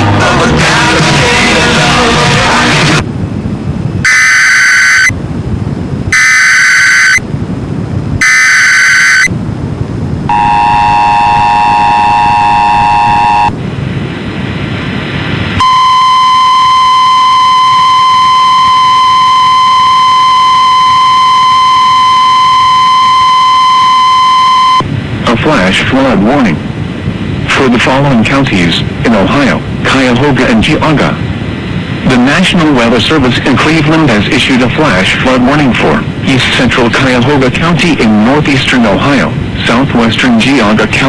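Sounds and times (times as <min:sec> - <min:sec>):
piercing steady alert tone: 0:04.1 - 0:05.1, 0:06.1 - 0:07.2, 0:08.2 - 0:09.3, 0:10.3 - 0:13.5
screeching digital data bursts: 0:04.1 - 0:05.1, 0:06.2 - 0:07.2, 0:08.2 - 0:09.3
two-tone attention signal: 0:04.1 - 0:05.2, 0:06.1 - 0:07.2, 0:08.2 - 0:09.3, 0:10.3 - 0:13.6, 0:15.6 - 0:24.9.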